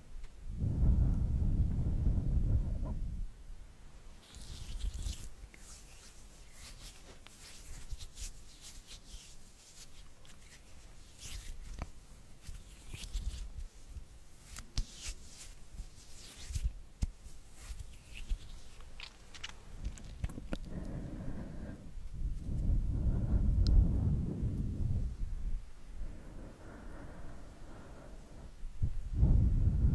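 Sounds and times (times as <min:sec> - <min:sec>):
soft crackly scratches: 0:04.2 - 0:20.7.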